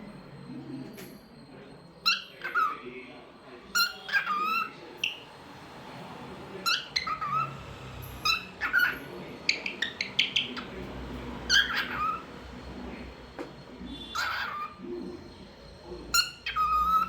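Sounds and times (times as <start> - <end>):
cockatiel chirping: 2.0 - 2.8, 3.7 - 5.3, 6.6 - 7.6, 8.2 - 12.4, 13.8 - 15.4, 16.1 - 17.0.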